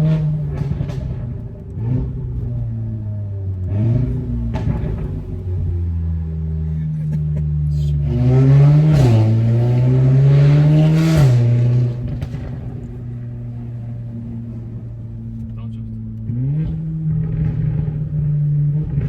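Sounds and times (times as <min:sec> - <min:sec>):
car engine accelerating: 0:00.0 - 0:19.0.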